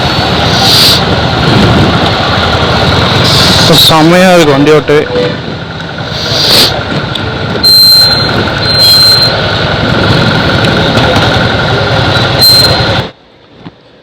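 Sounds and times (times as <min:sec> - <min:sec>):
motorcycle engine running: 0:00.0 - 0:13.2
wind buffeting microphone: 0:00.3 - 0:03.2.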